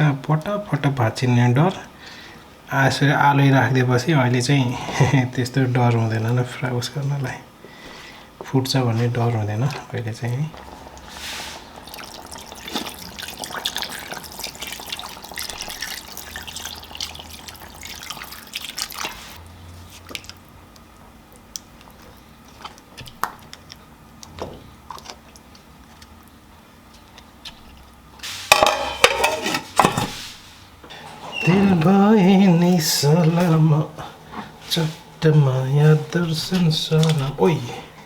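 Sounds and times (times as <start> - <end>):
fish frying in hot oil: 10.5 - 19.4.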